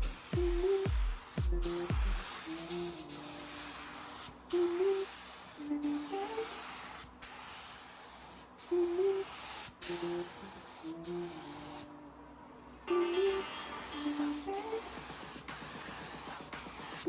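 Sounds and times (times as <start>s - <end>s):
spray gun hissing: 0.0s - 11.9s, 13.2s - 17.0s
melodic music: 12.9s - 15.1s.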